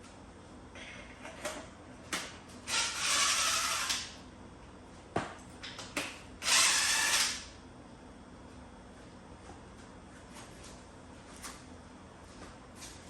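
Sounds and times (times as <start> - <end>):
power tool running: 2.7 - 4.1, 6.4 - 7.5.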